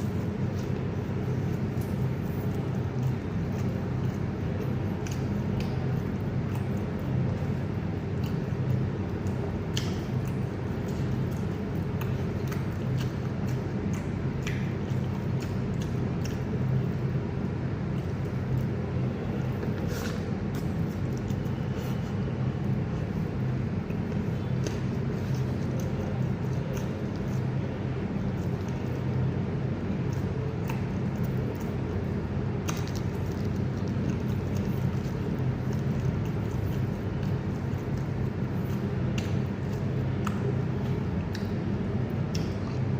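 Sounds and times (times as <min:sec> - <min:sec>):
wet chewing clicks and smacks: 0:00.0 - 0:42.9.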